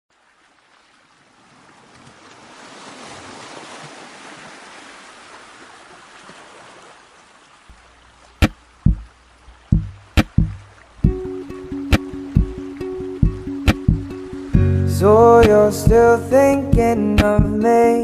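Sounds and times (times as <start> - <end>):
sharp beats: 8.4 - 9.1, 9.7 - 14.7.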